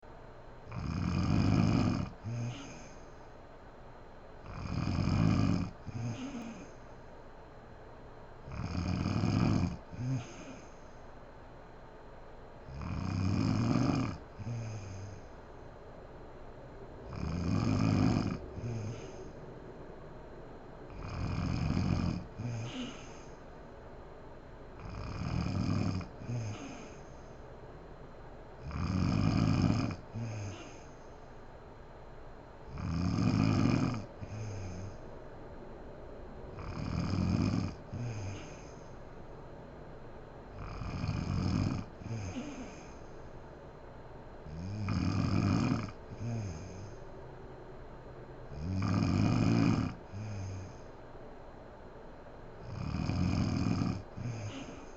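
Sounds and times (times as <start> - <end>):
woman snoring: 0.7 - 3.1, 4.4 - 6.9, 8.4 - 10.9, 12.7 - 15.3, 17.1 - 19.4, 20.9 - 23.4, 24.8 - 27.3, 28.6 - 31.1, 32.7 - 35.0, 36.6 - 39.0, 40.5 - 43.1, 44.5 - 47.0, 48.5 - 50.9, 52.6 - 54.9.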